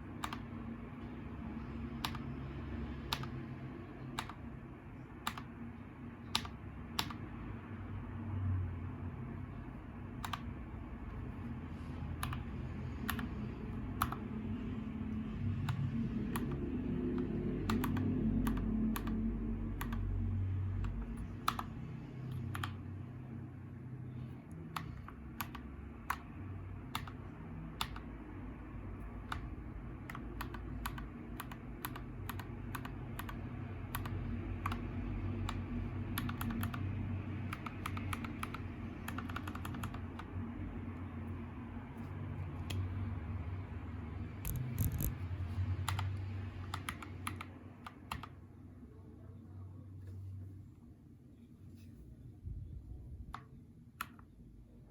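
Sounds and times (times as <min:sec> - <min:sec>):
low background rumble: 0:00.0 - 0:54.9
mechanical keyboard typing: 0:00.1 - 0:00.6, 0:01.9 - 0:02.4, 0:03.0 - 0:04.5, 0:05.2 - 0:05.6, 0:06.2 - 0:07.3, 0:10.2 - 0:11.2, 0:12.1 - 0:14.5, 0:15.4 - 0:20.2, 0:20.8 - 0:22.9, 0:24.6 - 0:28.2, 0:29.1 - 0:40.4, 0:44.4 - 0:45.2, 0:45.8 - 0:48.4.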